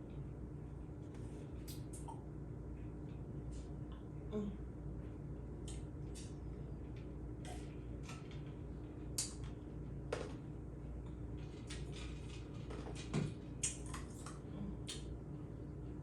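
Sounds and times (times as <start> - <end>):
lip smacks and mouth clicks: 9.2 - 9.4, 13.6 - 15.1.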